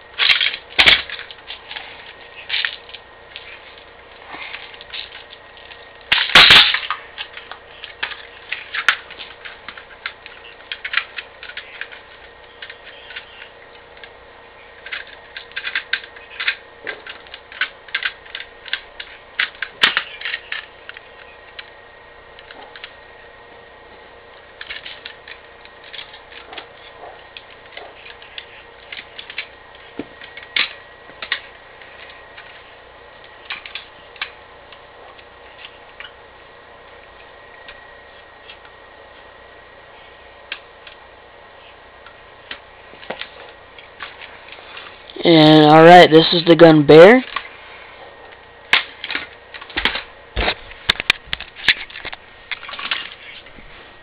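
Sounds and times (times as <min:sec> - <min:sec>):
parts clattering: 0:00.0 - 0:23.2, 0:24.2 - 0:36.3, 0:47.0 - 0:54.0.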